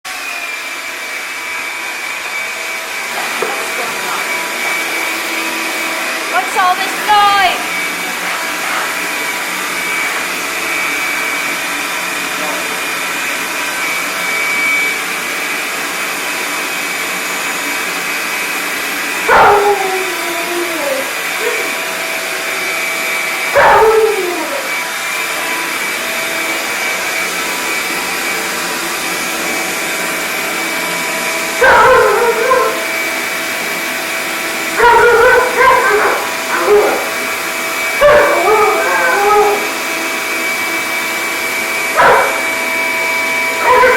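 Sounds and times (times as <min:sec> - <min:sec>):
shop vacuum whine: 0:00.0 - 0:43.9
dog howling calls: 0:19.2 - 0:21.9, 0:23.5 - 0:24.8, 0:31.5 - 0:33.0, 0:34.6 - 0:40.0, 0:41.9 - 0:42.6, 0:43.4 - 0:43.9
dog yipping barks: 0:19.3 - 0:19.8, 0:23.5 - 0:24.1, 0:31.6 - 0:32.8, 0:34.8 - 0:37.1, 0:38.0 - 0:39.7, 0:42.0 - 0:42.4, 0:43.6 - 0:43.9.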